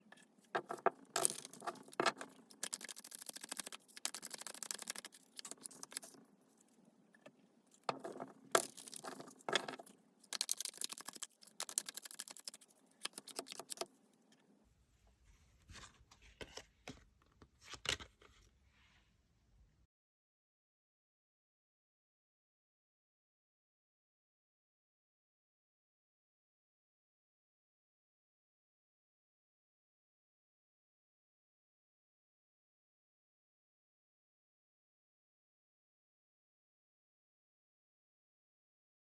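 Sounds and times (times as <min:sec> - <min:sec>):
cards shuffling: 0:00.6 - 0:06.2, 0:07.9 - 0:13.9.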